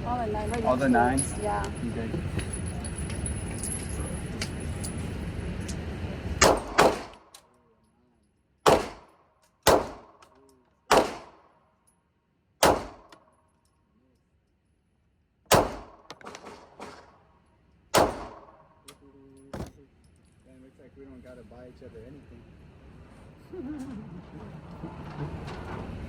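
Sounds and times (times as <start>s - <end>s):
pistol shots: 6.4s - 7.4s, 8.6s - 10.3s, 10.9s - 11.6s, 12.6s - 13.2s, 15.5s - 17.1s, 17.9s - 18.8s.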